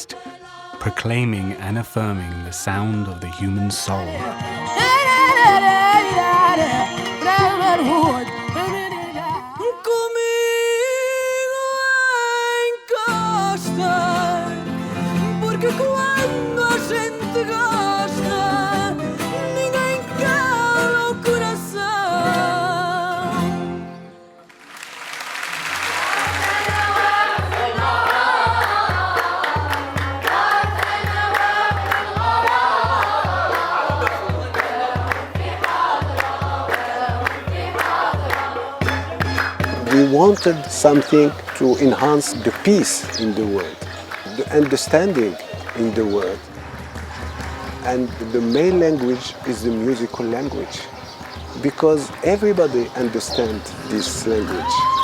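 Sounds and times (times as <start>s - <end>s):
melismatic singing voice: 0.0s - 24.4s, 25.9s - 46.5s
instrumental accompaniment: 3.9s - 9.5s, 26.0s - 55.0s.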